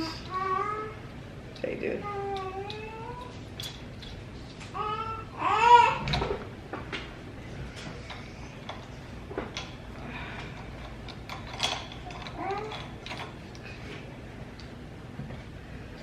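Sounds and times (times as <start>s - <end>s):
tripod parts clicking and rattling: 10.4s - 13.7s.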